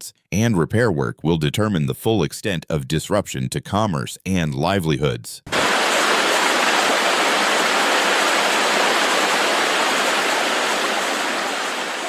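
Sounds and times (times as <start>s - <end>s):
water rushing: 5.5s - 12.0s.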